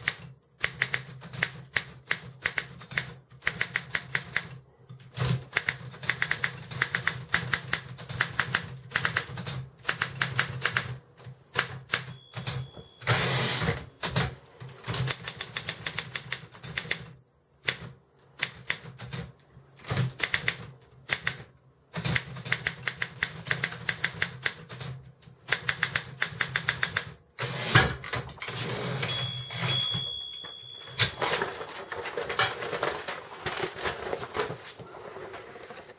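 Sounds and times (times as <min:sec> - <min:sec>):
typewriter bell ringing: 0:11.9 - 0:13.9, 0:28.4 - 0:33.0
typewriter carriage sliding and rattling: 0:13.0 - 0:14.9, 0:27.4 - 0:35.9.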